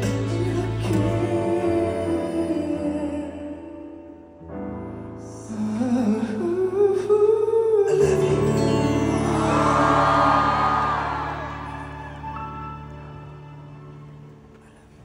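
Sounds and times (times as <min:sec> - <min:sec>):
live pop ballad with band: 0:00.0 - 0:04.2, 0:04.8 - 0:13.4
person singing: 0:00.0 - 0:04.3, 0:05.2 - 0:12.9.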